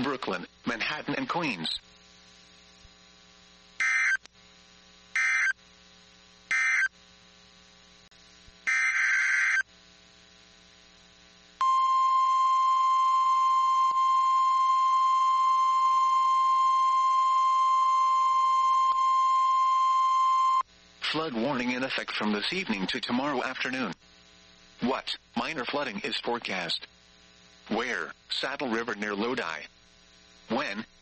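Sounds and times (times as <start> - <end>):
steady alarm tone: 3.8 - 4.2, 5.2 - 5.6, 6.5 - 6.9, 8.7 - 9.6, 11.6 - 20.6
raspy digital data bursts: 5.1 - 5.6.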